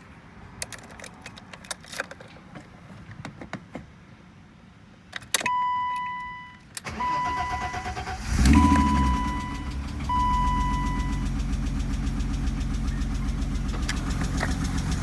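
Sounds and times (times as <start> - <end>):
car keys jingling: 0.5 - 2.8
starter cranking engine: 6.8 - 15.0
electronic warning tone: 8.5 - 11.2.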